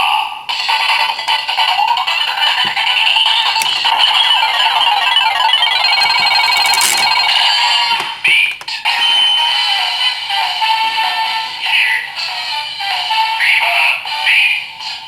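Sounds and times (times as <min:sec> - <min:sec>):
synthesized toy music: 0:01.7 - 0:08.8
rapid chime-like beeps: 0:03.8 - 0:07.9.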